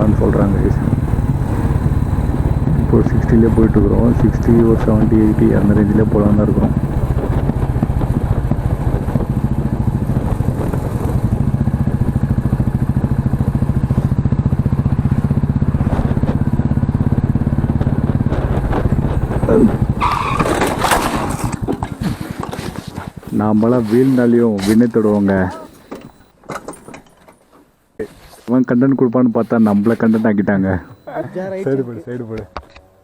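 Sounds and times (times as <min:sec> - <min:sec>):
motorcycle engine running: 0:00.0 - 0:26.3
motorcycle scraping on road: 0:00.0 - 0:26.3, 0:28.0 - 0:31.1.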